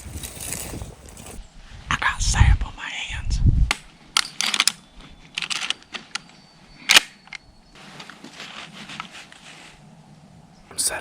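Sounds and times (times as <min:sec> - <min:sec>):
sharp clicks: 0:03.7 - 0:06.3, 0:06.9 - 0:07.4
soft steady rustling: 0:07.7 - 0:10.0.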